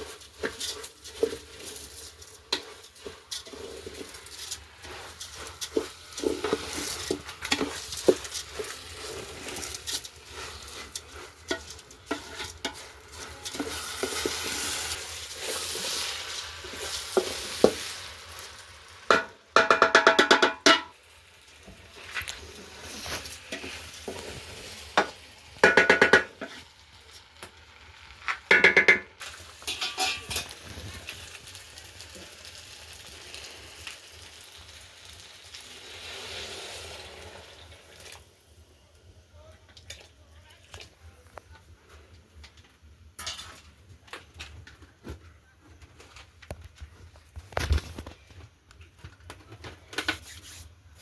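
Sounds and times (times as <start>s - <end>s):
spoon scraping a pot: 0.0s - 18.0s, 22.0s - 26.6s, 28.6s - 30.5s
food sizzling: 0.0s - 38.8s.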